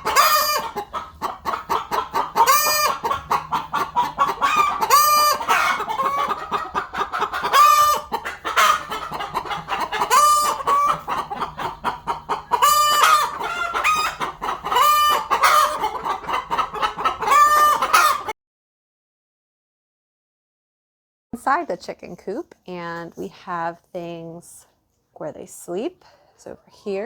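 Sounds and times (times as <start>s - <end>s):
chicken squawks: 0.0s - 18.3s
chickens clucking: 0.0s - 18.4s.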